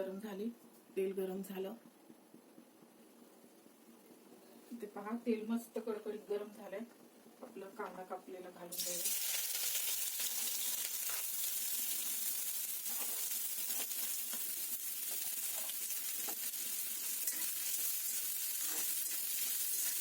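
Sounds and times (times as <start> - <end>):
onion sizzling in hot oil: 8.7 - 20.0.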